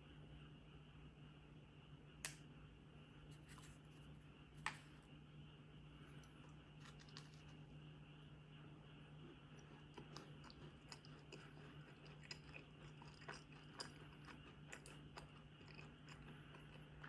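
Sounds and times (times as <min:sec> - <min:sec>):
low steady hum: 0:00.0 - 0:17.0
chewing food: 0:06.2 - 0:07.8, 0:09.2 - 0:17.0.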